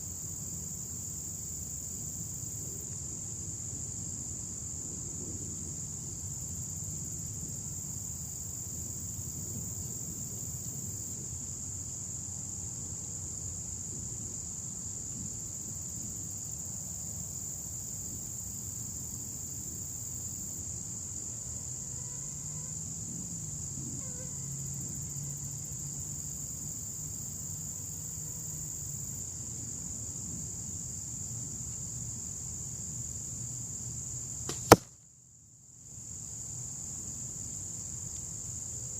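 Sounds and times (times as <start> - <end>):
crickets trilling: 0.0 - 29.9.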